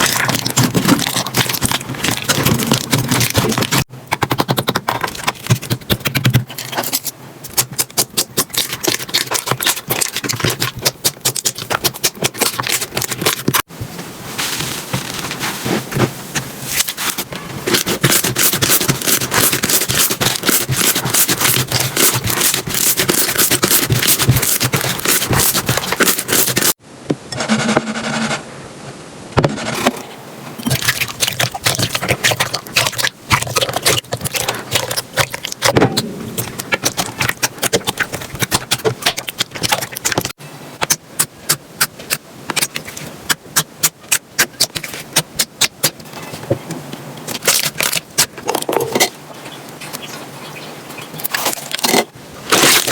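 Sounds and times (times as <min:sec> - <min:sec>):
slime crackling and popping: 0:00.0 - 0:06.3, 0:07.5 - 0:13.6, 0:16.8 - 0:26.8, 0:30.6 - 0:41.3, 0:52.5 - 0:52.9.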